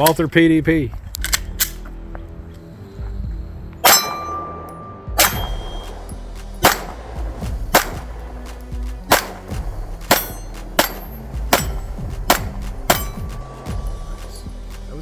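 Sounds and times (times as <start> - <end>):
steel targets clanging: 3.8 - 5.9, 12.9 - 13.4
pistol shots: 5.2 - 13.6.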